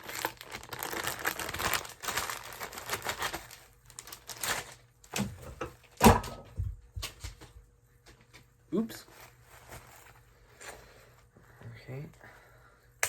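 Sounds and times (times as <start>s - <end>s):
packaging crinkling: 0.0s - 5.4s.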